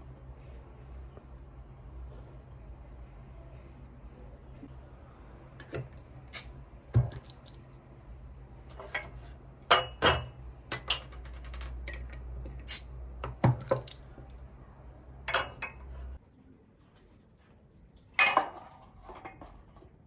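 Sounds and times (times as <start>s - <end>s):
steady low hum: 0.0s - 16.7s
glass and dishware clinking: 8.8s - 12.2s, 15.3s - 15.9s.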